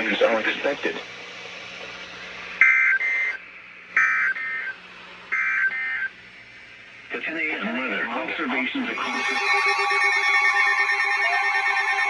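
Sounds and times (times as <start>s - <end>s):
radio hiss: 0.0s - 1.1s, 7.1s - 9.5s
digital data tones: 4.0s - 6.1s, 9.0s - 12.0s.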